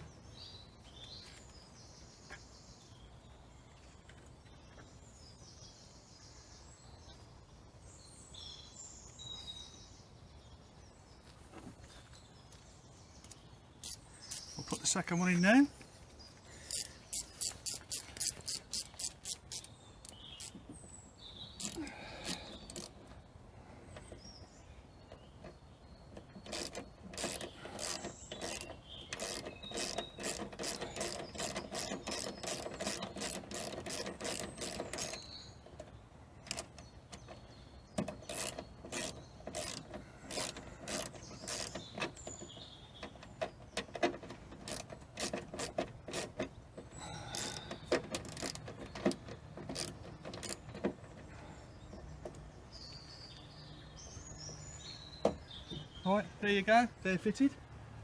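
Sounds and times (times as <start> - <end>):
hand ratchet clicking: 13.8 - 14.5, 16.6 - 20.6, 21.6 - 23.0, 26.4 - 35.2, 38.0 - 42.3, 43.8 - 46.5, 47.1 - 51.0.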